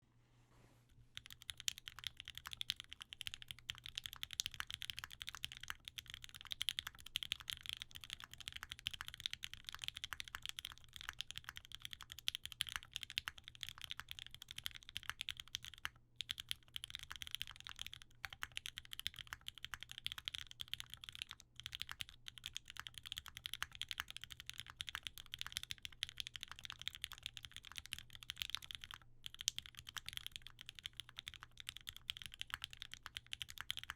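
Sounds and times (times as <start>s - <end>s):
fast typing on mechanical keyboard: 1.1s - 33.9s.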